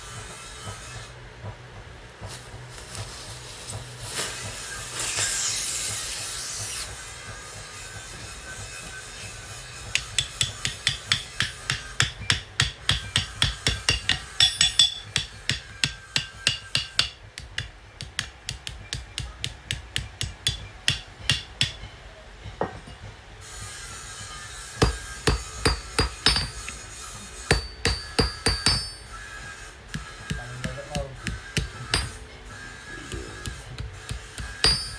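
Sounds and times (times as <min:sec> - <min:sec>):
hammer striking metal: 0:10.0 - 0:21.9, 0:24.8 - 0:34.9.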